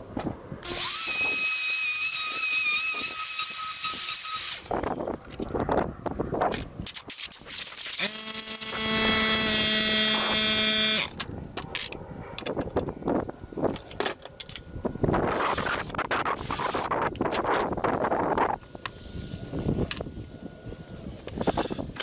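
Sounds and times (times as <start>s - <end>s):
power tool motor running: 0.6s - 5.0s, 7.8s - 11.2s.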